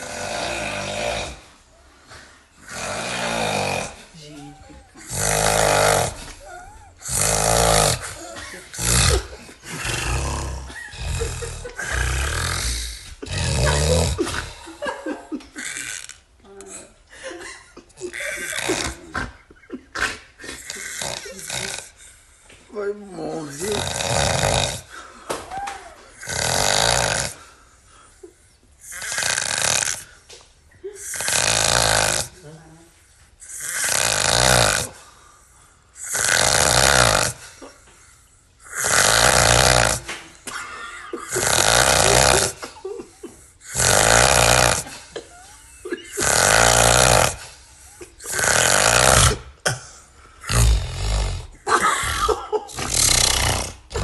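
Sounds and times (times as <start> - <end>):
person snoring loudly: 0.0 - 1.6, 2.6 - 14.9, 18.0 - 19.3, 20.5 - 22.0, 23.2 - 25.0, 26.2 - 27.5, 28.8 - 30.1, 31.0 - 32.4, 33.4 - 35.2, 36.0 - 37.6, 38.6 - 40.3, 41.2 - 42.8, 43.6 - 45.1, 46.1 - 49.8, 50.4 - 54.0.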